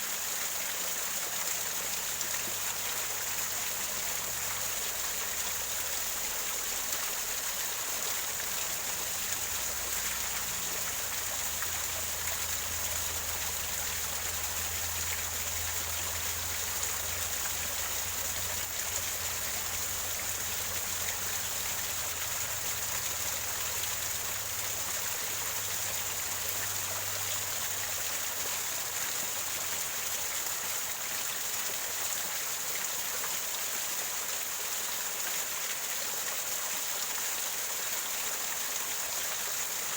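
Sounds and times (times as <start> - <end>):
small waterfall splashing over rocks: 0.0 - 39.9.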